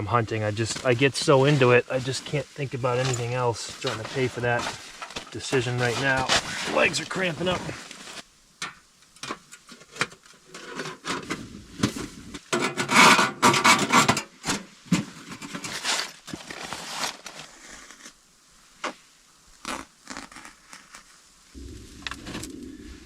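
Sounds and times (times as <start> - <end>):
objects rustling and scraping: 0.0 - 8.3, 9.0 - 18.2.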